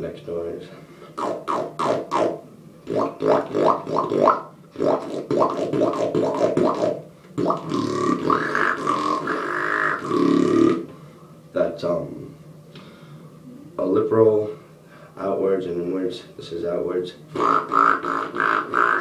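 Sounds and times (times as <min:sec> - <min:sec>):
beatbox lip roll buzz: 0:01.1 - 0:11.0, 0:17.2 - 0:19.0
pitched vocal tone: 0:01.2 - 0:10.9, 0:17.3 - 0:19.0.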